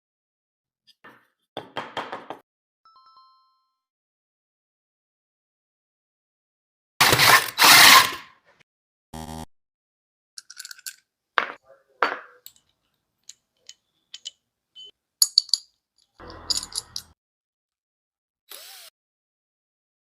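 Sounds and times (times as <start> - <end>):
metal tools clinking: 10.4 - 11.0, 12.4 - 17.2.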